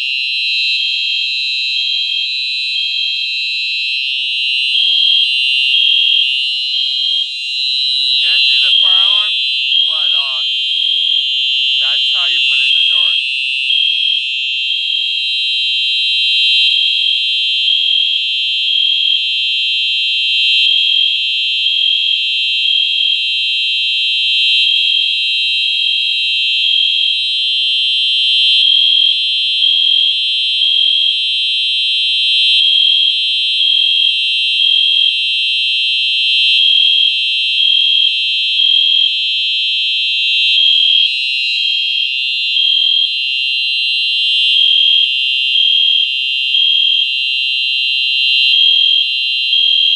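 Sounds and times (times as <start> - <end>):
fire alarm horn: 7.6 - 13.6, 40.4 - 49.9.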